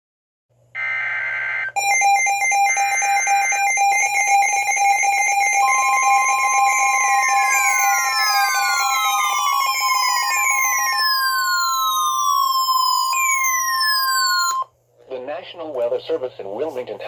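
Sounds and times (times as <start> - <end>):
buzzing data tones: 0.8 - 14.6
steady warning tone: 0.8 - 14.6
falling siren-like tones: 0.8 - 14.7
rapid alert beeping: 1.8 - 14.6.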